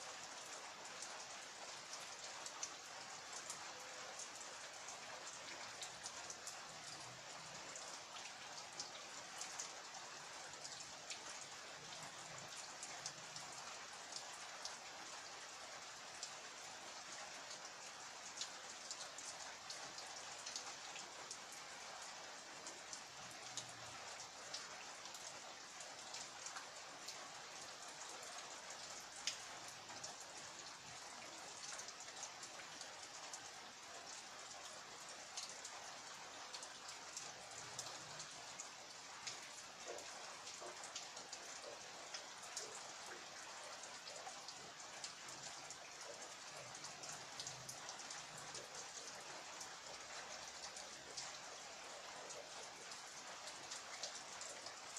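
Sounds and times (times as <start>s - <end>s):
steady rain: 0.0s - 54.9s
raindrops ticking: 27.9s - 49.6s.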